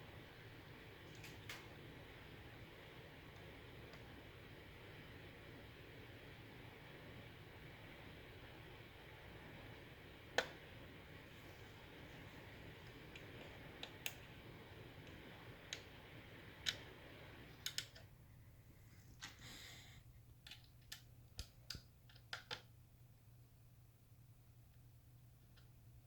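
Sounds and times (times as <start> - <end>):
faint hiss: 0.0 - 21.8
light sharp clicks and taps: 20.4 - 22.7.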